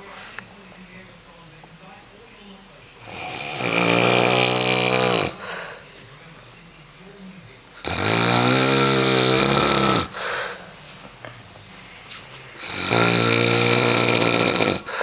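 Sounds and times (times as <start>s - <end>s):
quiet breathing: 0.0s - 1.1s, 2.8s - 15.0s
man snoring: 3.0s - 5.8s, 7.8s - 10.6s, 12.6s - 15.0s
snort: 3.0s - 5.8s, 7.8s - 10.6s, 12.6s - 15.0s.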